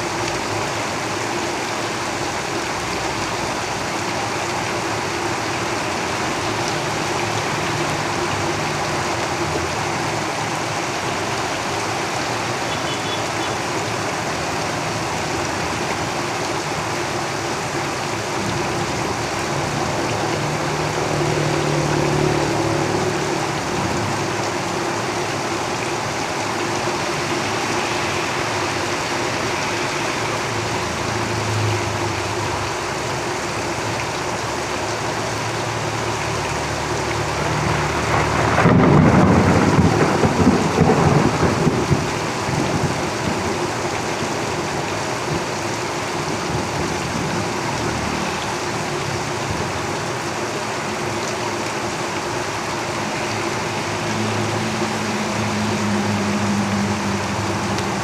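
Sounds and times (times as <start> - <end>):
rain on a tin roof: 0.0 - 58.0
vehicles passing on road: 0.0 - 58.0.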